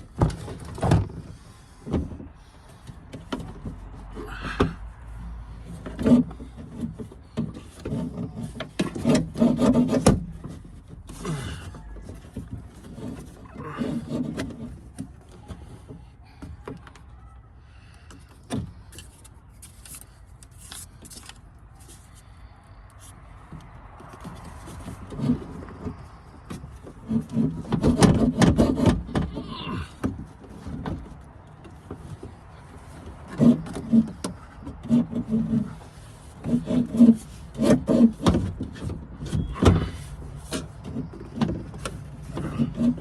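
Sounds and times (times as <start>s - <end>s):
rattling and knocking of stuck part: 0.0s - 17.1s, 23.4s - 43.0s
clicks and knocks of door parts: 23.6s - 32.4s.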